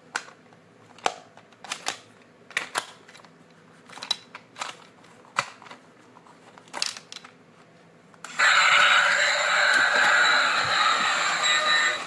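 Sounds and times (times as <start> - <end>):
toy electronic sound effects: 8.3 - 12.0.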